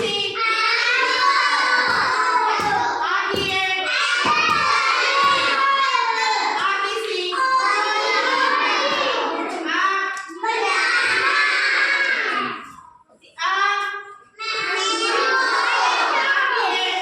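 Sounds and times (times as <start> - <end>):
rhythmic claps or thumps: 0.0 - 0.4, 1.0 - 5.9
children singing together: 0.0 - 12.8, 14.5 - 17.0.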